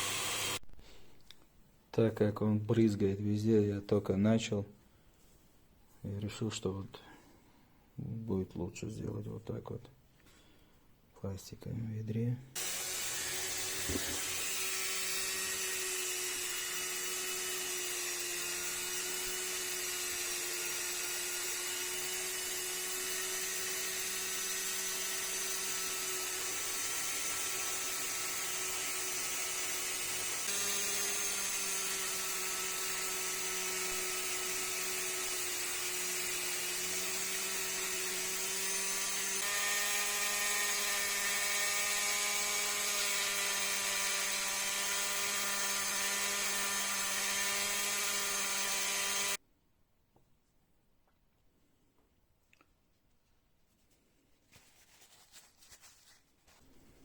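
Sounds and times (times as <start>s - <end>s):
rotary tool whining: 0.0s - 0.6s, 12.6s - 49.4s.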